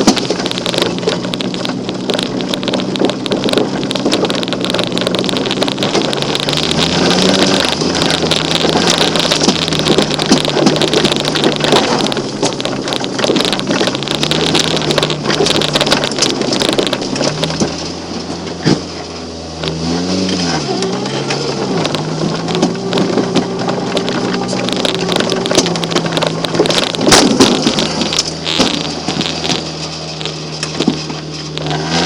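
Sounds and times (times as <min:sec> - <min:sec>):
car body rattle: 0:00.0 - 0:32.0
car engine running: 0:00.0 - 0:32.0
heavy thumps: 0:20.6 - 0:32.0.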